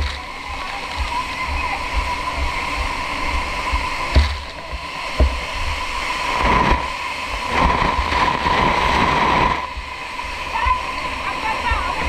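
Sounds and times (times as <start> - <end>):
rushing noise: 0.0 - 12.0
steady high hum: 0.0 - 12.0
wind buffeting microphone: 0.0 - 12.0
sharp knocks: 4.1 - 5.4.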